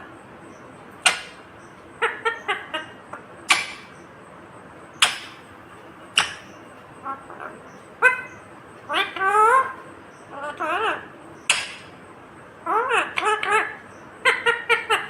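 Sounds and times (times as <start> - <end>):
parakeet chattering chirps: 1.0 - 4.1, 4.9 - 5.5, 6.1 - 12.0, 12.6 - 15.0
parakeet squawking: 2.0 - 4.0, 5.0 - 5.4, 6.2 - 11.9, 12.6 - 15.0.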